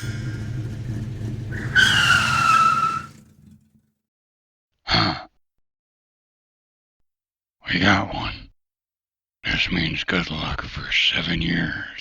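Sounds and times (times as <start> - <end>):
tyre screech: 0.0 - 3.7
car engine running: 0.0 - 3.8.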